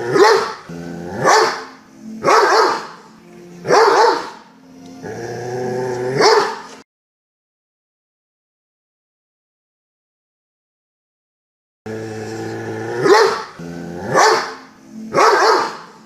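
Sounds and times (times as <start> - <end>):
dog barking deep and loud: 0.0 - 3.0, 3.6 - 4.4, 6.2 - 6.7, 13.0 - 16.0
dog growling: 0.0 - 3.0, 5.0 - 6.8, 11.9 - 16.0.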